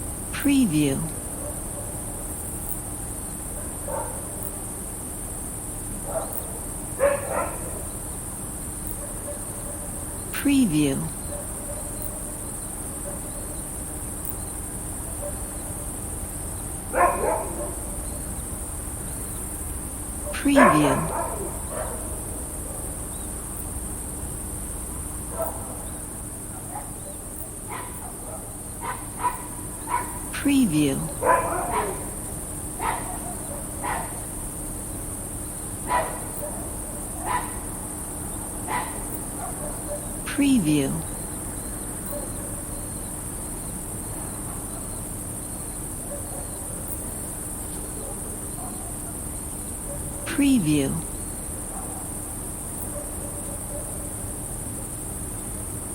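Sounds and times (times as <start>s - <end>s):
crickets chirping: 0.0s - 55.9s
distant dog bark: 3.4s - 4.5s, 6.0s - 8.0s, 8.9s - 10.1s, 11.2s - 13.7s, 15.0s - 15.8s, 16.8s - 18.3s, 20.2s - 23.1s, 25.3s - 30.3s, 31.1s - 34.4s, 35.8s - 37.9s, 38.6s - 40.2s, 46.0s - 46.9s, 47.9s - 50.4s, 51.6s - 54.3s.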